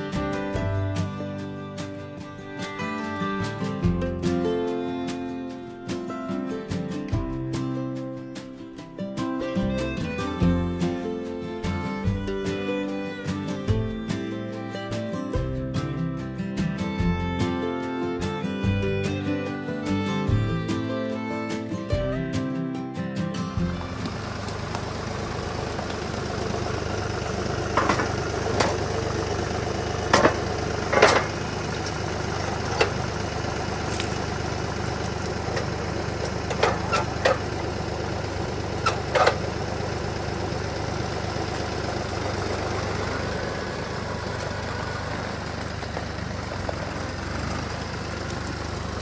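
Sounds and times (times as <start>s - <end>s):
engine idling: 0.0s - 49.0s
sharp knocks and clanks: 27.7s - 28.9s, 30.1s - 33.1s, 35.5s - 37.6s, 38.8s - 39.5s.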